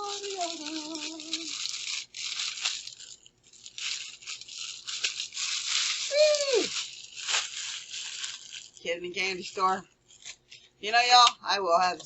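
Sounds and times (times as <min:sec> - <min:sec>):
packaging rustling and tearing: 0:00.0 - 0:10.8.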